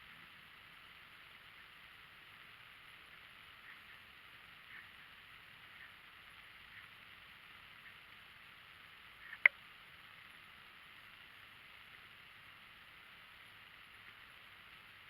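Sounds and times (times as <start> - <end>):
steady hiss: 0.0 - 15.0
faint tick: 9.2 - 9.6.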